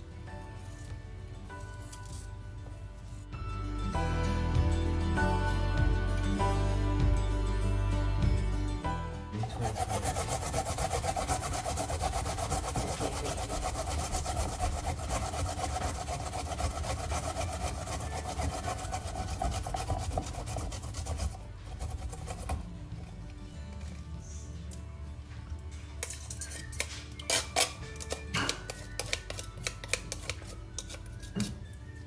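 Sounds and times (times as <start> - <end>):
rasping scrape of food preparation: 9.4 - 22.8, 26.0 - 31.7.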